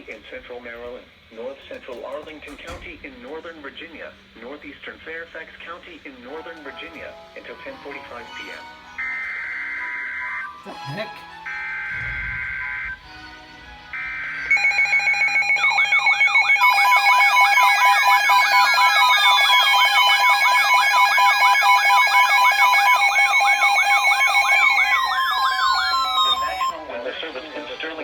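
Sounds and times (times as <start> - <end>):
steady alert tones: 9.0 - 26.8
slow falling tones: 11.4 - 26.8
short electronic beeps: 11.5 - 13.0
warbling siren sweeps: 11.5 - 26.9.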